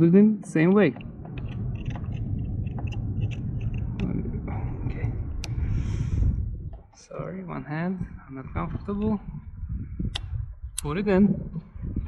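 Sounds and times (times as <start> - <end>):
camera handling rumble: 1.0 - 5.6.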